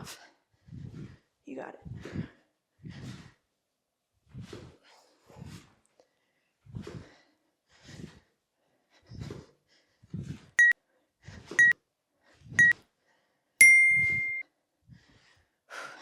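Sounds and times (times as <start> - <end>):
timer long beep: 13.6 - 14.4
timer short beeps: 13.6 - 14.4.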